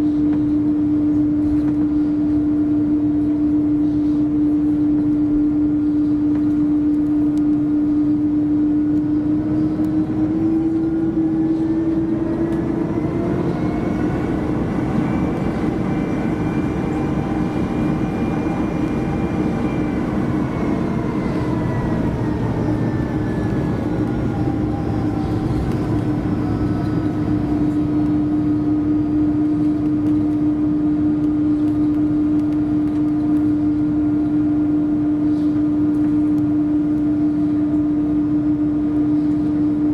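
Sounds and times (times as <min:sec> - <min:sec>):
jet engine rumble and airflow: 0:00.0 - 0:39.9
steady cabin hum: 0:00.0 - 0:39.9
whining engine tone: 0:00.5 - 0:39.9.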